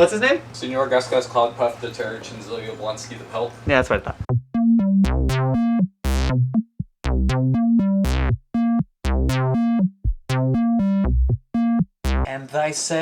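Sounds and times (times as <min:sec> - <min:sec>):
electronic synthesizer music: 0:03.7 - 0:12.3.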